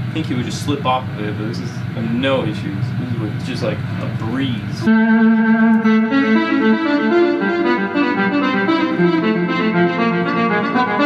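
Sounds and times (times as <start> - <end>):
electric guitar melodic run: 4.8 - 11.0.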